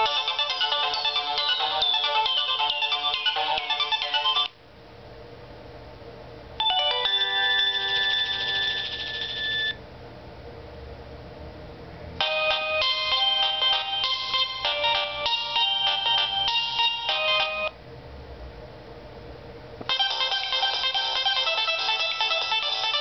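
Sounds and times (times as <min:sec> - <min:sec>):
phone ringtone tunes: 0:00.0 - 0:04.5, 0:06.6 - 0:09.8, 0:12.2 - 0:17.7, 0:19.9 - 0:23.0.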